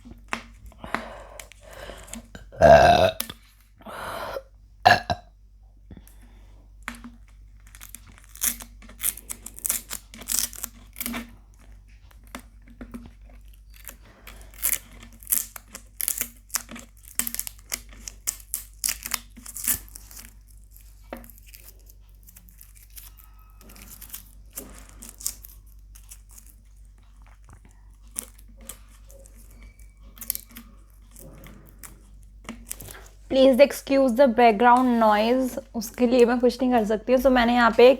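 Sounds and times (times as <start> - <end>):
plastic label tearing and crinkling: 7.0 - 33.3.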